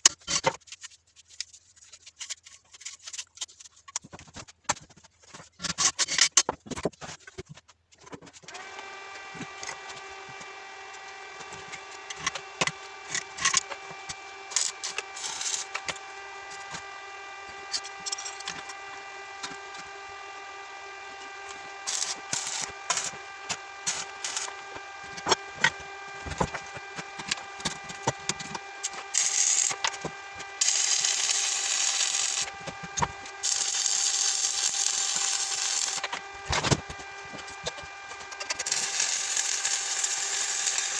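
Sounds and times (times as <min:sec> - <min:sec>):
cutting or grinding noise: 0:08.4 - 0:20.3, 0:20.9 - 0:40.9
small power tool motor running: 0:08.5 - 0:40.9.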